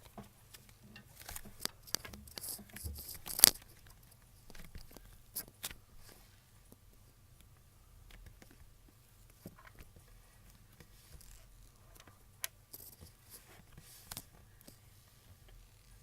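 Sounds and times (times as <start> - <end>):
rustling or tearing noises: 0.6 - 6.2.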